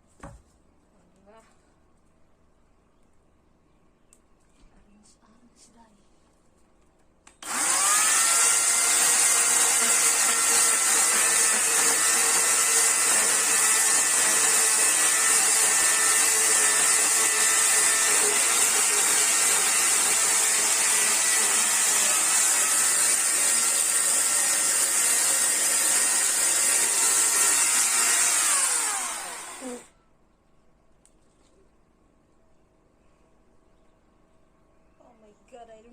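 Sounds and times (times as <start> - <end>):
chainsaw running: 7.4 - 29.9.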